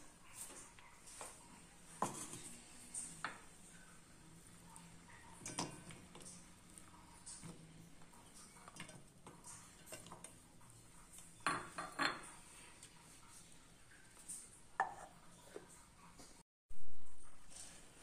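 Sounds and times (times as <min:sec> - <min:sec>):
dishes and utensils clinking: 0:01.9 - 0:03.5, 0:05.1 - 0:06.5, 0:08.3 - 0:13.0.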